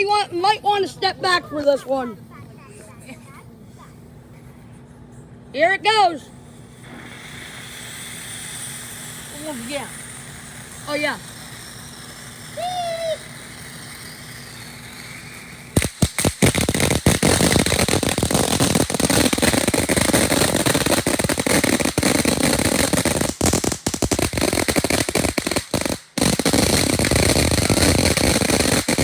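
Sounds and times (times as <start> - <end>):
firework bangs: 5.6 - 29.0
rapid crackling firework pops: 6.4 - 29.0.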